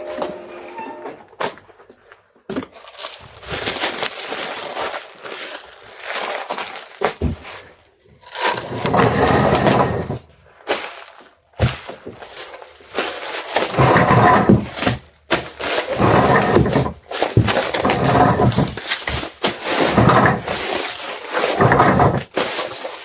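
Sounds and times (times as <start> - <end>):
packaging material crinkling: 2.7 - 7.2, 10.6 - 13.7.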